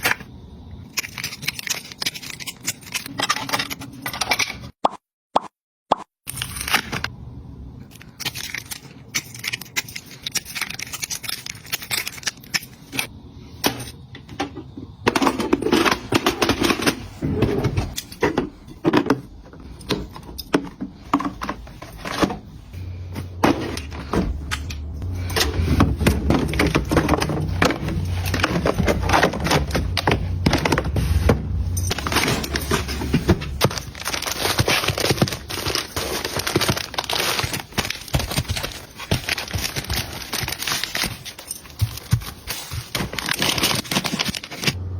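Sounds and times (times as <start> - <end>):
household items handled and packed: 0.0 - 4.8, 6.3 - 44.9.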